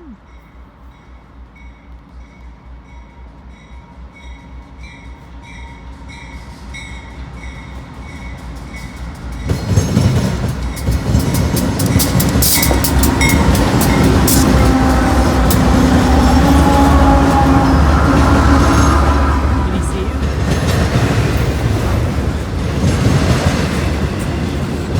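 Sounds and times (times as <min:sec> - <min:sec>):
train wheels rumbling and clattering: 0:00.6 - 0:24.9
crossing bell dinging: 0:08.8 - 0:24.9.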